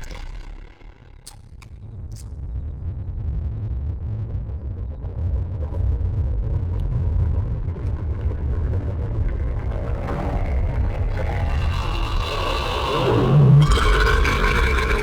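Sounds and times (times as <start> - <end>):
deep distorted burp rumble: 0.0 - 1.7, 9.9 - 15.0.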